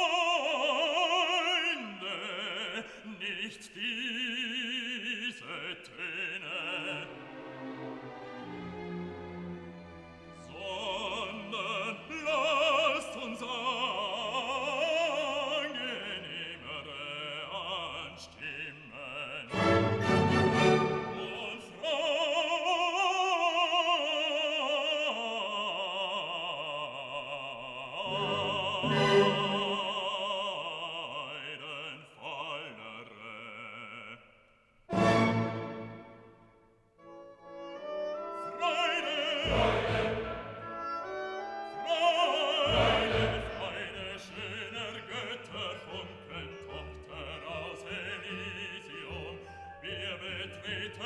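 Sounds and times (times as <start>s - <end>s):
operatic voice singing: 0.0s - 8.6s, 10.3s - 36.2s, 38.1s - 51.0s
orchestral accompaniment: 6.6s - 16.8s, 19.5s - 22.0s, 28.0s - 30.5s, 34.9s - 51.0s.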